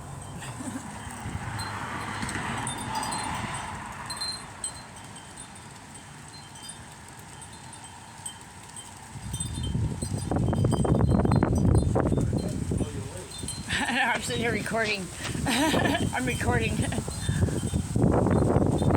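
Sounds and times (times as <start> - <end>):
gusting wind: 0.0 - 18.9
wind chimes ringing: 0.0 - 18.9.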